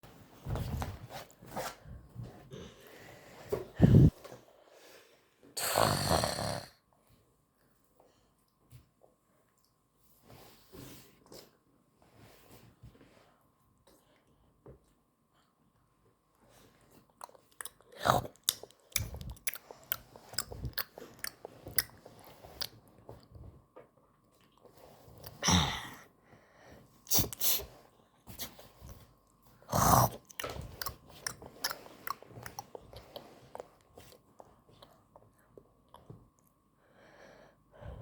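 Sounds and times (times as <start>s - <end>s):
person chewing crunchy food: 17.0s - 23.2s, 29.7s - 35.1s.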